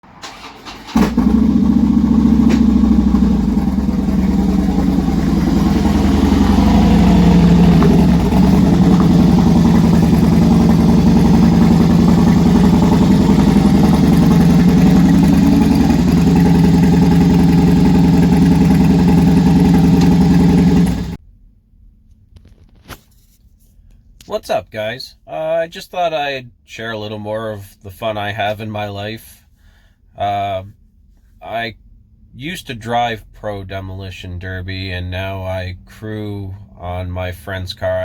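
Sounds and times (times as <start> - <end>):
car engine starting and running: 0.0 - 21.2.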